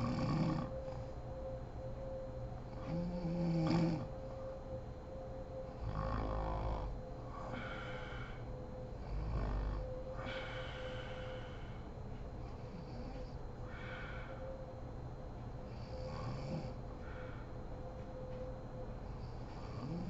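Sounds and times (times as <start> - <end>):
woman snoring: 0.0 - 0.7, 2.8 - 4.1, 5.8 - 6.9, 15.7 - 16.8, 19.6 - 20.0
faint steady hum: 0.0 - 20.0.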